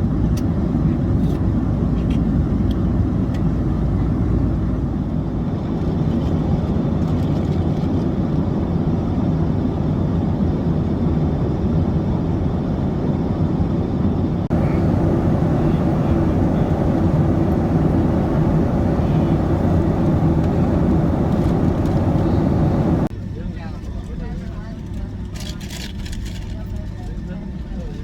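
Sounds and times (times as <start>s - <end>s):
jet engine cabin rumble: 0.0s - 23.1s
faint clicks: 14.5s - 23.1s.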